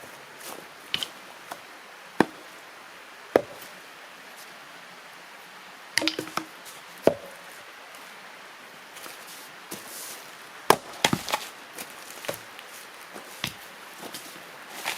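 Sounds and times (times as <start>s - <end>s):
wood chopping: 2.2s - 2.4s, 3.4s - 3.7s, 6.0s - 7.3s, 10.7s - 11.4s, 12.2s - 12.5s, 13.4s - 13.7s
small knocks: 6.0s - 7.3s.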